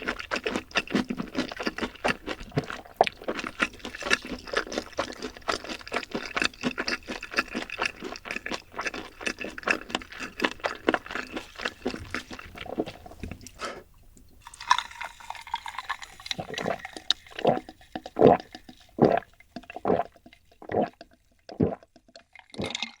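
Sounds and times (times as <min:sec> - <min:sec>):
wet chewing and smacking: 0:00.0 - 0:13.6, 0:14.4 - 0:23.0
loud swallowing gulps: 0:01.0 - 0:03.4, 0:09.7 - 0:13.8, 0:16.3 - 0:23.0
drink being poured: 0:14.4 - 0:23.0.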